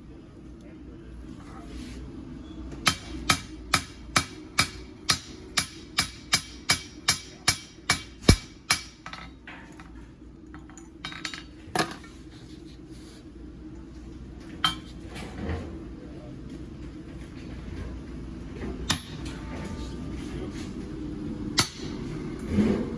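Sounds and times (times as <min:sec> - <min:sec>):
steady low hum: 0:00.0 - 0:22.9
hammer striking steel on anvil: 0:02.8 - 0:09.3, 0:18.9 - 0:19.3, 0:21.6 - 0:22.1.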